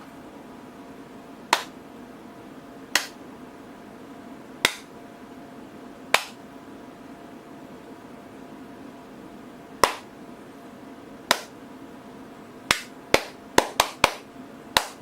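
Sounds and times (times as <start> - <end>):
faint steady hum: 0.0 - 15.0
finger snaps: 1.5 - 1.7, 2.9 - 3.2, 4.6 - 4.9, 6.1 - 6.4, 9.8 - 10.1, 11.3 - 11.5, 12.7 - 14.2, 14.8 - 15.0.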